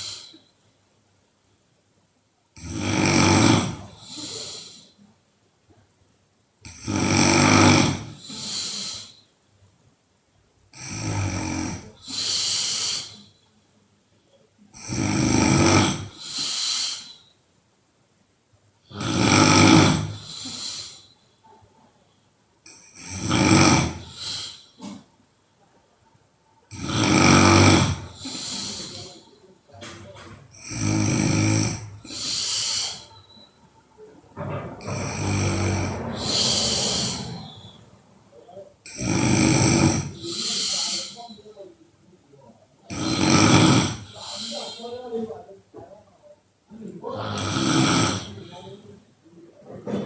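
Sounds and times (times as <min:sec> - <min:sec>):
woman snoring loudly: 0:02.6 - 0:04.8, 0:06.7 - 0:09.1, 0:10.8 - 0:13.2, 0:14.8 - 0:17.1, 0:18.9 - 0:21.0, 0:22.7 - 0:24.6, 0:26.7 - 0:29.2, 0:30.6 - 0:33.2, 0:34.8 - 0:37.8, 0:38.9 - 0:41.3, 0:42.9 - 0:44.8, 0:47.1 - 0:48.7.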